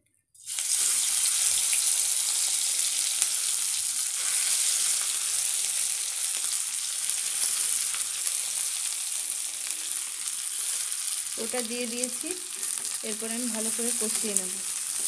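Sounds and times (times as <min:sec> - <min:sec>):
potato frying in hot oil: 0:00.4 - 0:15.0.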